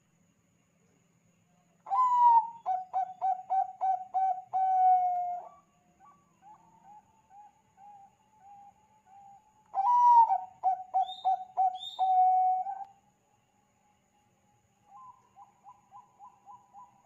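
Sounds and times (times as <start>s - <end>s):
dove cooing song: 1.9s - 12.9s, 14.9s - 17.0s.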